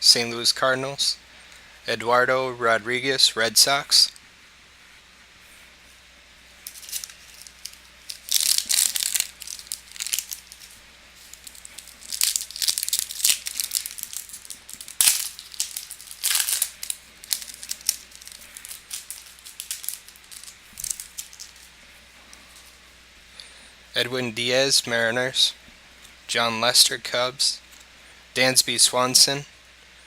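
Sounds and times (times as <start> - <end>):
cards and foil wrapper crinkling: 6.6 - 22.8.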